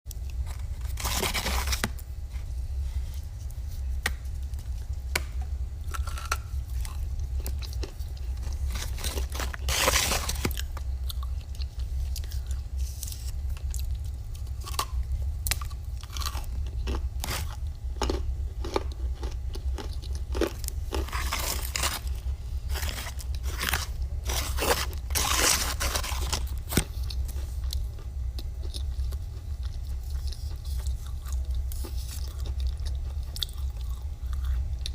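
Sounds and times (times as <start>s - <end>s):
crunching and chewing clay: 0.1s - 34.9s
steady low hum: 0.1s - 34.9s.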